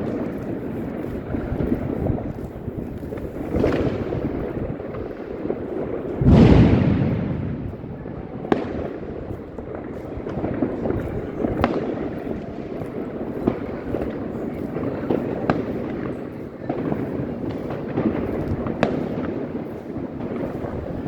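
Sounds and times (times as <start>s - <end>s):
fireworks crackling and rumbling: 0.0s - 21.0s
loud firework bangs: 0.0s - 21.0s.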